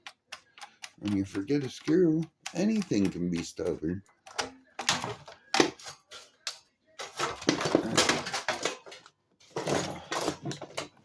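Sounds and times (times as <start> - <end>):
plastic housing clattering and scraping: 7.0 - 11.0.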